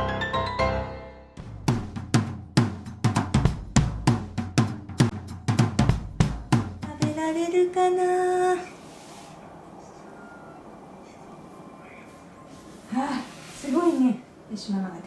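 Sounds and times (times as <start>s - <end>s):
kick and snare drum beat: 1.4s - 7.3s.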